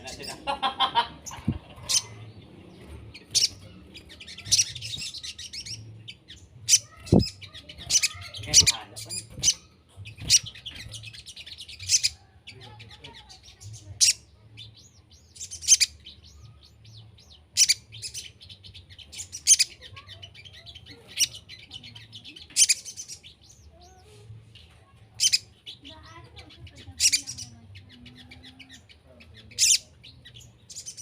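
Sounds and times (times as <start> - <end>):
bird chirping and twittering: 0.0 - 31.0
songbird sharp high-pitched calls: 3.2 - 12.2, 13.2 - 23.7, 25.2 - 25.9, 26.8 - 31.0.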